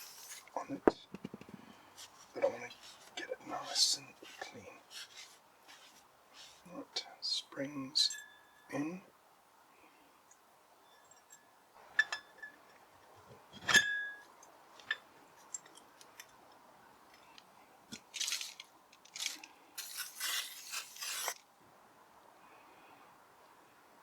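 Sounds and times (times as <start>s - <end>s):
scratchy rubbing noise: 0.0s - 0.5s, 2.0s - 6.6s, 19.8s - 21.4s
metal parts clinking: 18.0s - 21.4s.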